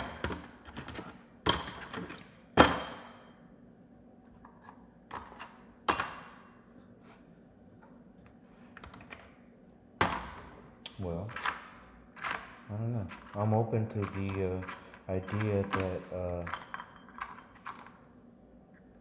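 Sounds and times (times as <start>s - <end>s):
metal tools clinking: 11.0s - 18.1s.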